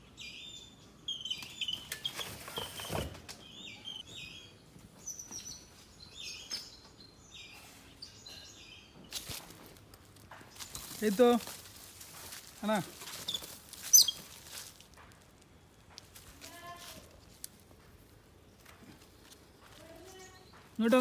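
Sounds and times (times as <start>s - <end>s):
birds chirping: 0.0s - 21.0s
rustling: 9.1s - 21.0s.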